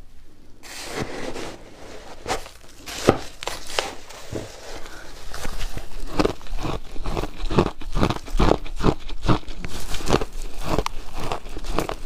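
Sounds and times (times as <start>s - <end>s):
ice being bitten and crunched: 4.8s - 12.0s.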